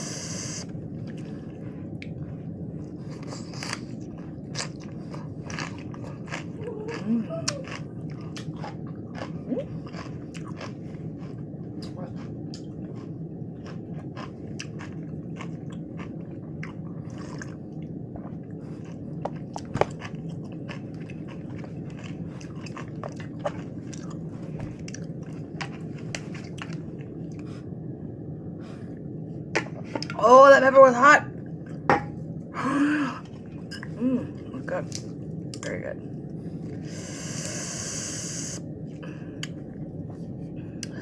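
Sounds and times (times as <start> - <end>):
chewing crunchy food: 0.0 - 27.7
low steady hum: 0.0 - 41.0.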